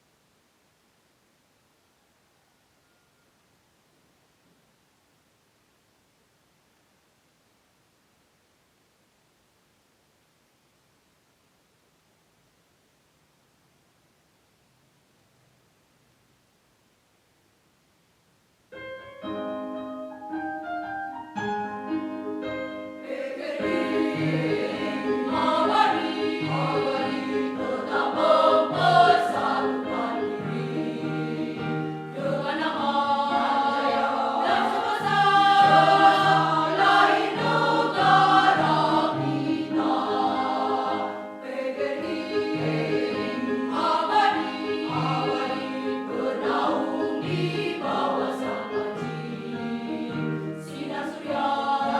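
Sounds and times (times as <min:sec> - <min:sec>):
choir singing with instruments: 0:21.9 - 0:51.9.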